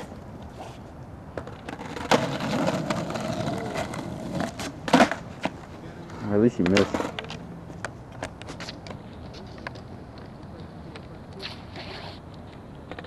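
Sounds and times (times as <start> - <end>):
skateboard clattering: 0.0 - 13.0
skateboard wheels rolling on pavement: 0.0 - 13.0
skateboard knocking: 1.3 - 13.0.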